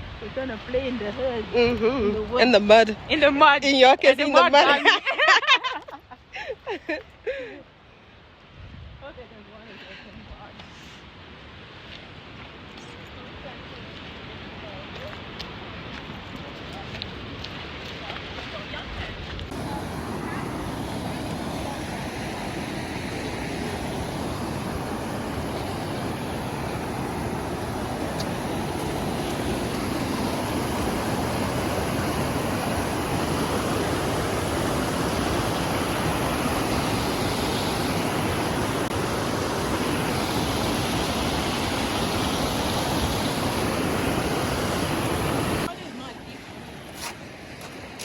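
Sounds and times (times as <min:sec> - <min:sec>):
rushing water: 0:00.0 - 0:05.8, 0:11.3 - 0:48.0.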